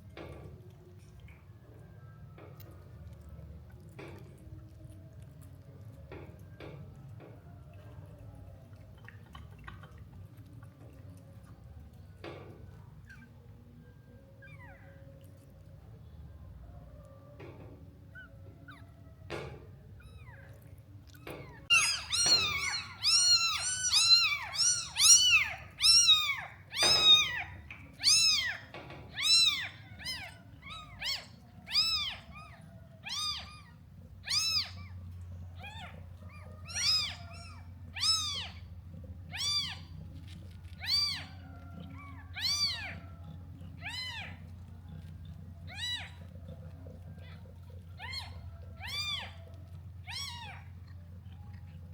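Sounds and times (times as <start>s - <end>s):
cat meowing: 21.2s - 35.0s, 35.6s - 40.0s, 40.6s - 44.6s, 45.7s - 50.8s.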